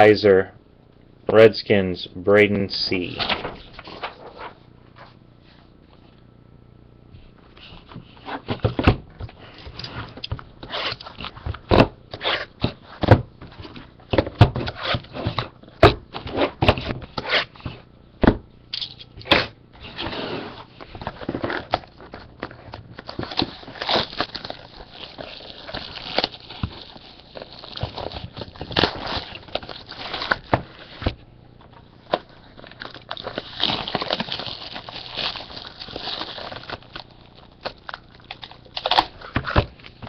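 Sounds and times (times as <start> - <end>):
plastic and cardboard crinkling: 19.8 - 40.0.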